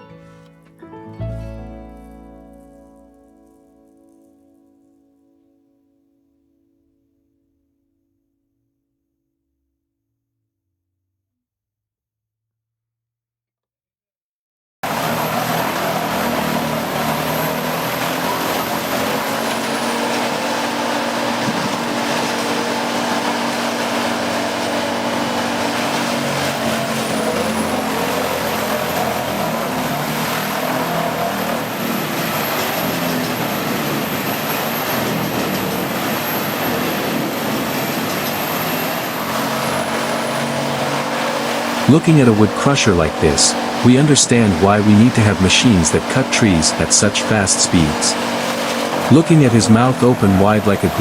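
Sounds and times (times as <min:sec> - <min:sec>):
wood chipper running: 0:14.8 - 0:51.0.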